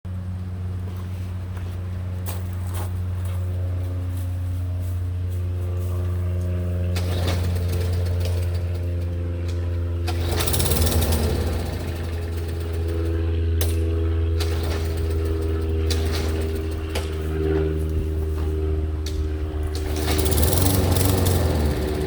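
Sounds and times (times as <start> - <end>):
low mechanical hum: 0.1 - 22.0
lawn mower failing to start: 6.8 - 17.3, 19.6 - 22.0.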